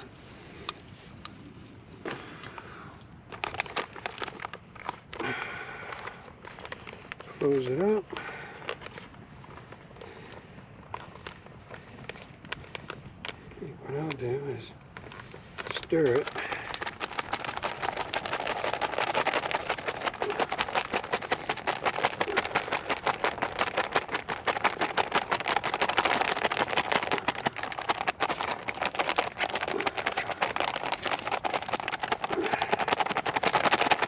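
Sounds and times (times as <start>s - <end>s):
food pouch crinkling: 2.1s - 34.0s.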